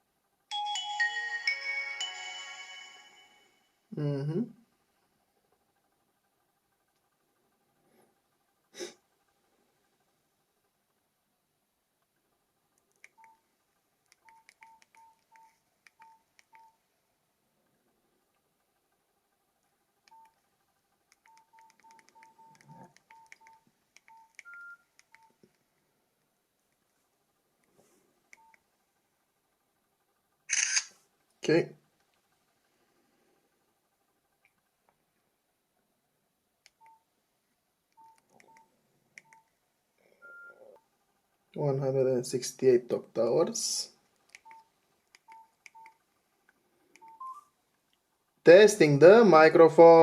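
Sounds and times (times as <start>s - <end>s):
phone key beeps: 14.2s - 16.8s, 21.2s - 25.4s, 36.7s - 37.0s, 38.0s - 39.5s, 44.4s - 46.0s, 47.0s - 47.4s.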